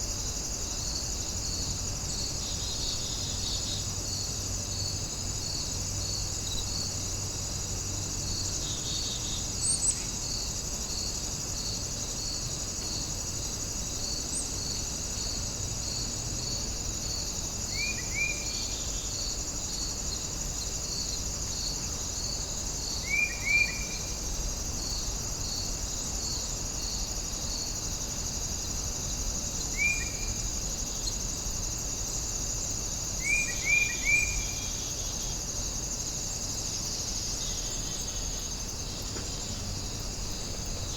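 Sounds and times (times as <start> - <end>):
crickets chirping: 0.0 - 40.9
short rising insect calls: 22.2 - 25.6, 33.0 - 40.9.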